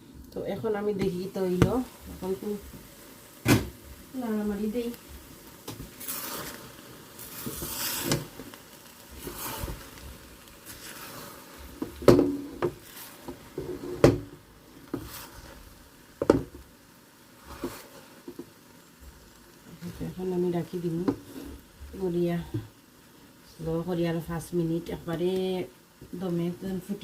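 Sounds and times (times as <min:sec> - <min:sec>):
spoon scraping through rice: 0:05.8 - 0:08.4, 0:09.2 - 0:10.0, 0:10.6 - 0:11.7, 0:14.9 - 0:15.6.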